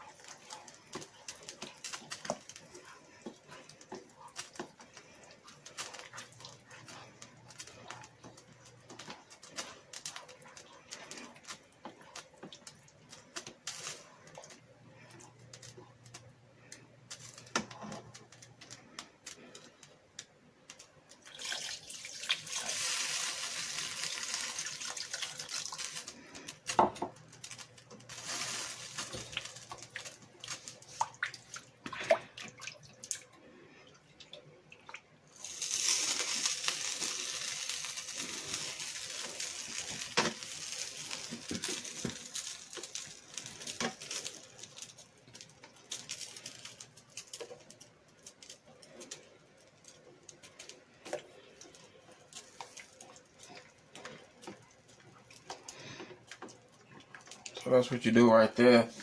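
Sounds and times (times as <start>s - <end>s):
water running: 21.2s - 26.5s.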